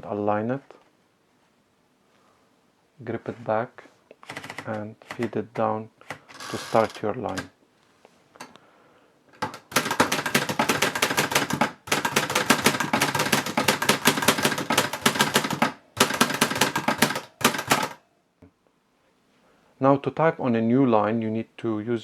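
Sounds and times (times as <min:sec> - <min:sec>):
typewriter keystrokes: 0:04.3 - 0:07.5, 0:09.4 - 0:18.0.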